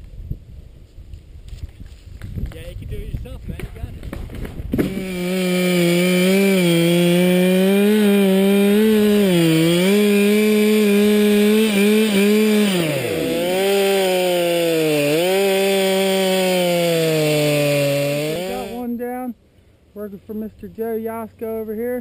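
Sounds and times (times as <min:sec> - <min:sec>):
chainsaw cutting wood: 0:03.6 - 0:18.9.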